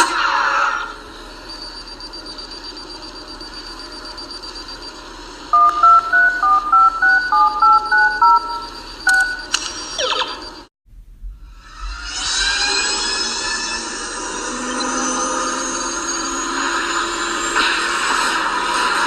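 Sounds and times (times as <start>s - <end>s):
electronic hum with high whine: 0.0s - 19.0s
two-tone keypad beeps: 5.6s - 10.7s.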